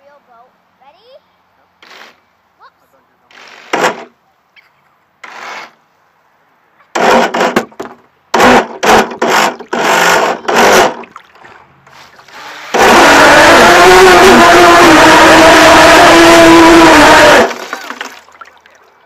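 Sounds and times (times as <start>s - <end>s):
short loud bursts: 1.8s - 2.2s, 3.3s - 4.1s, 6.9s - 11.1s, 12.3s - 18.2s
boat motor running loudly: 7.0s - 7.7s, 8.4s - 11.1s, 12.3s - 18.1s.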